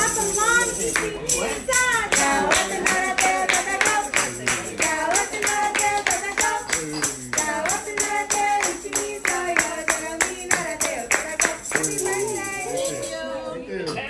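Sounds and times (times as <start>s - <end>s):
tambourine struck on the beat: 0.0s - 13.0s
group singing: 0.0s - 14.0s.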